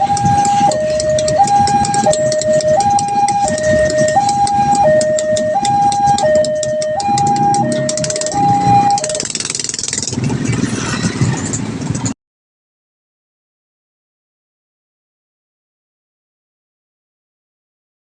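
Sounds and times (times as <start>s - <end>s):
two-tone crossing alarm: 0.0s - 9.5s
rapid clicking: 0.0s - 10.6s.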